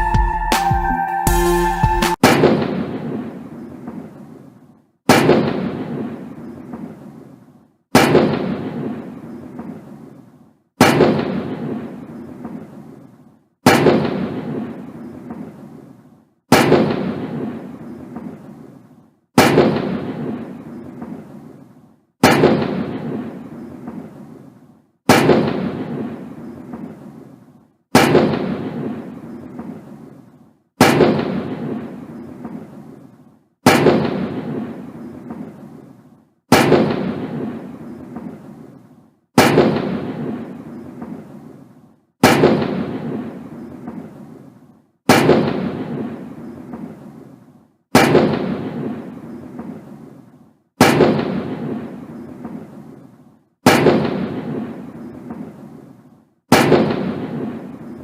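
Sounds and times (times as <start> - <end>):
gunshots with rolling echo: 1.7 - 4.3, 5.1 - 7.2, 7.9 - 10.1, 10.8 - 13.0, 13.6 - 15.7, 16.5 - 18.8, 19.4 - 21.6, 22.2 - 24.5, 25.1 - 27.2, 27.9 - 30.2, 30.8 - 35.9, 36.5 - 38.8, 39.4 - 41.6, 42.2 - 44.5, 45.1 - 55.8, 56.5 - 58.0.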